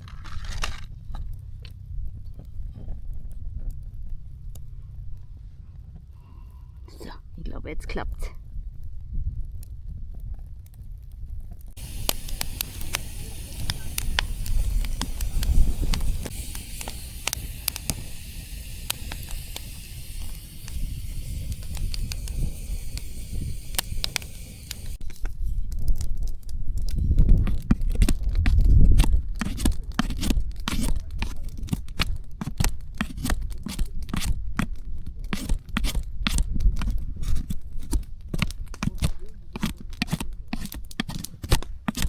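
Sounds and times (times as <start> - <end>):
campfire crackling and popping: 8.0 - 42.0
low rumble: 11.1 - 25.0
steady hiss: 11.8 - 25.0.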